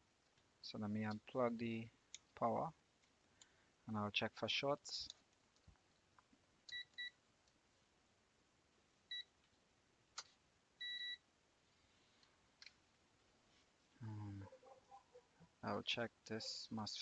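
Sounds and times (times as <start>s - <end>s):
multimeter beeping: 10.8s - 11.2s.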